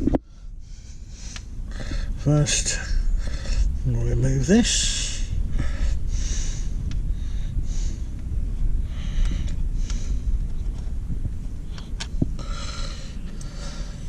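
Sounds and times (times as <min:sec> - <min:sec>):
low rumble: 0:00.0 - 0:14.0
breathy rushes of noise: 0:05.1 - 0:14.0.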